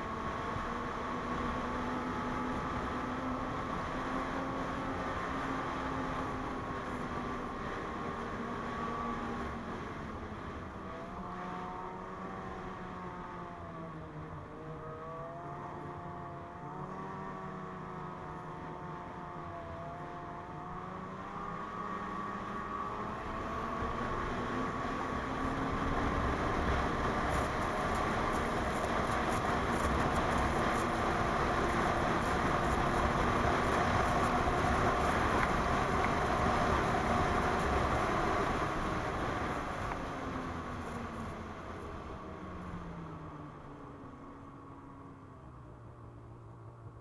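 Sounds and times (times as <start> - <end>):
snowmobile engine: 21.6 - 42.8.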